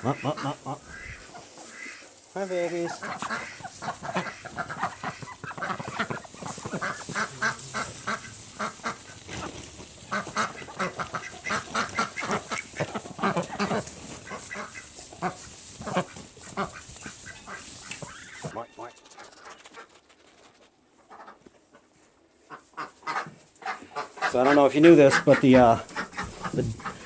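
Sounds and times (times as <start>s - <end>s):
ducks quacking: 0.0s - 20.1s, 20.9s - 27.0s
bag rustling: 6.2s - 10.6s.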